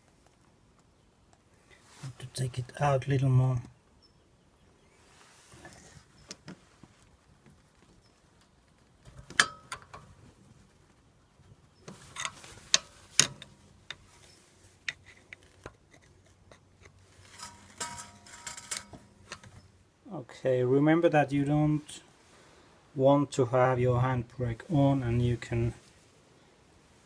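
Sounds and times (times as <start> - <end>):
metal parts and tools clinking: 17.3 - 19.7.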